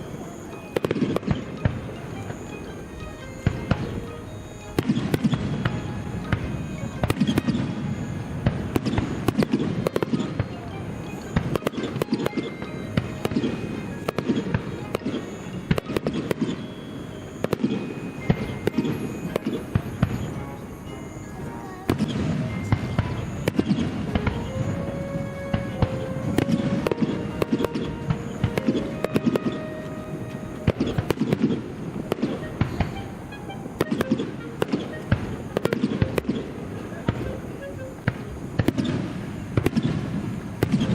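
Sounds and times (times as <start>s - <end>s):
fireworks sharp bangs: 0.0s - 40.9s
rumble of fireworks shells: 4.7s - 16.7s, 21.9s - 33.1s, 38.0s - 40.9s.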